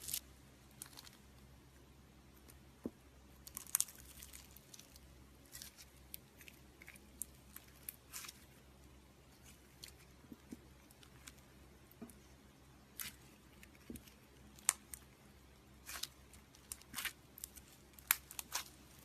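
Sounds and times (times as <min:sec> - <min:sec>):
slime clicks and crackles: 0:15.8 - 0:19.0.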